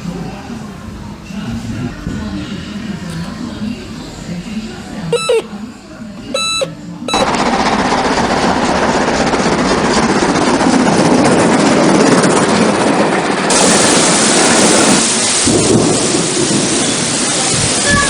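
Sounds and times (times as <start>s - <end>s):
hissing train sound effect: 13.4s - 18.0s.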